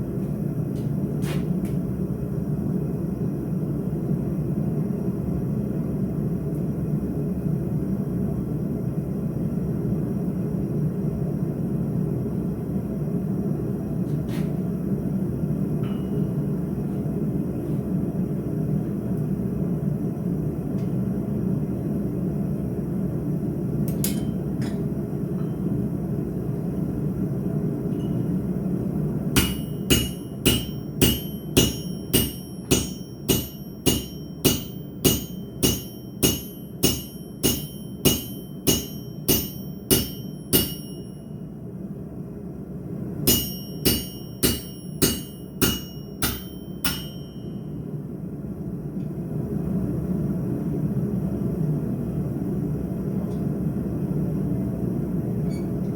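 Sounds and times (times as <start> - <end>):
hammer striking steel on anvil: 15.8 - 16.5, 23.9 - 25.6, 29.4 - 41.4, 43.3 - 47.8.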